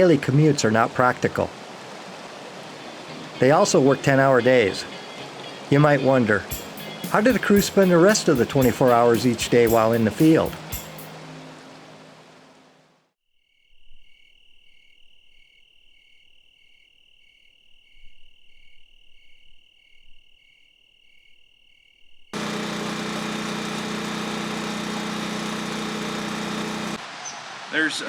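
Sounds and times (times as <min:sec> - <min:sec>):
insects trilling: 0:13.4 - 0:22.8
pulsing insect chirp: 0:13.4 - 0:23.0.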